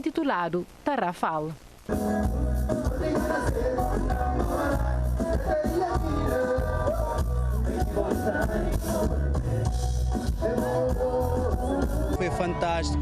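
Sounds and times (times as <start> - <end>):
band with heavy bass beat: 1.9 - 13.0
person singing: 2.7 - 12.3.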